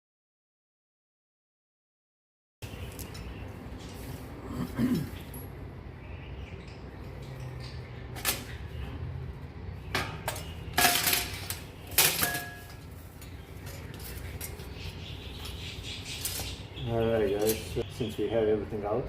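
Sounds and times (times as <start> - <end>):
metal parts clanking: 9.9 - 14.7, 17.2 - 17.8.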